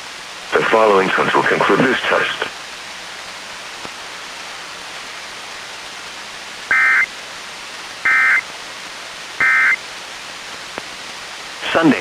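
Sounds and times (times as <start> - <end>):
radio hiss: 0.4 - 2.7, 6.7 - 7.1, 8.0 - 8.5, 9.4 - 9.8, 10.6 - 12.0
warbling digital data tones: 6.7 - 7.1, 8.1 - 8.4, 9.4 - 9.8.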